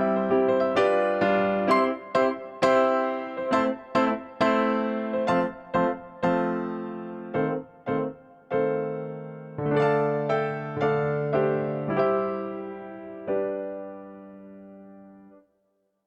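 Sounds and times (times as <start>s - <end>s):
slow piano-like keyboard melody: 0.0s - 15.5s.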